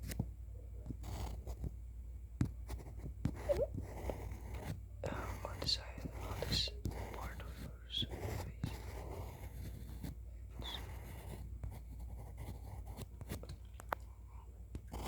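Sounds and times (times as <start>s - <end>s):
pencil sketching strokes: 1.0s - 1.7s, 2.6s - 13.4s, 14.8s - 15.0s.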